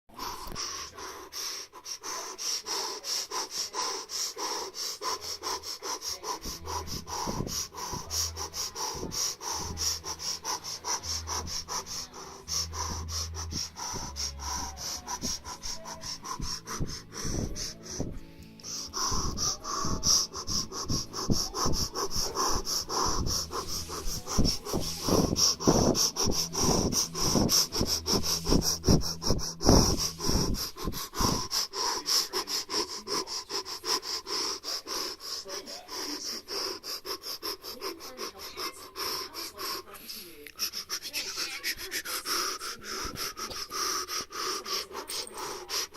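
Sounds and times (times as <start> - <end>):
person breathing heavily: 0.1 - 45.9
music with low bass: 5.2 - 31.8.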